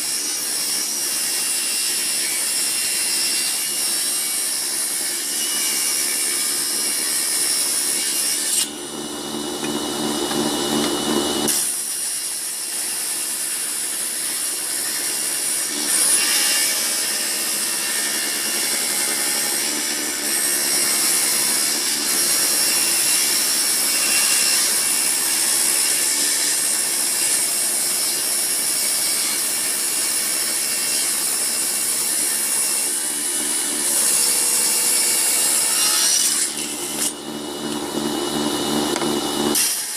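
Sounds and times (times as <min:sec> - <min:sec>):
table saw cutting wood: 0:00.0 - 0:39.9
motor hum: 0:08.6 - 0:11.5, 0:36.5 - 0:39.6.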